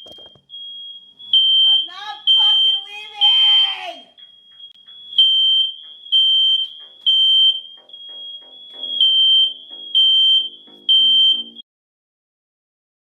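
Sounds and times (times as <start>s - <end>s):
fire alarm beeping: 0.0s - 11.6s
plucked music: 7.7s - 11.6s.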